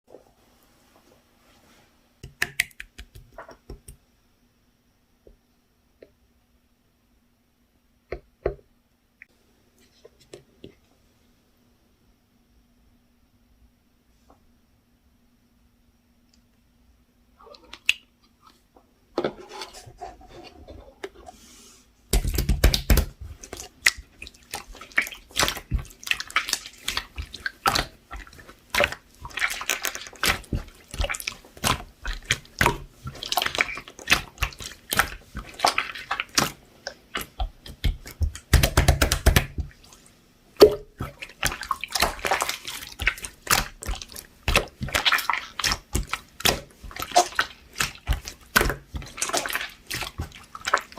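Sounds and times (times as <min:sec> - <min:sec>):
hands squelching slime: 0:22.1 - 0:50.9.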